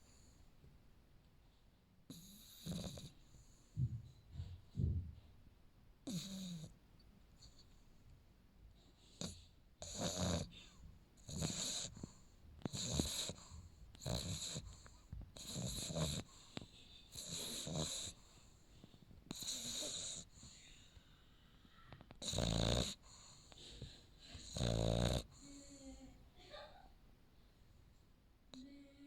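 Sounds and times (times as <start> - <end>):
puppy snoring: 2.1 - 4.9, 6.0 - 6.8, 8.8 - 26.1.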